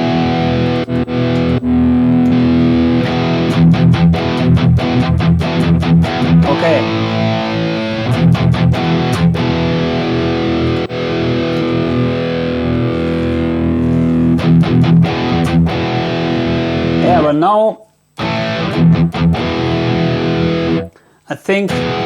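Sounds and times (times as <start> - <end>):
distorted electric guitar chords: 0.0 - 21.0, 21.7 - 22.0.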